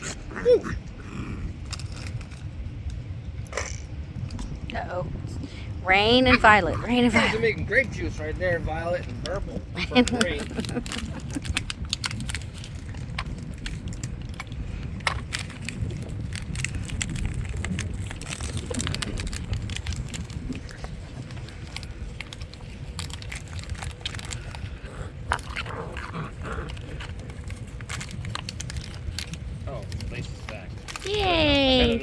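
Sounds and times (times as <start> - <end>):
puppy whine: 0.0 - 1.6
puppies chewing on sock toys: 8.4 - 32.0.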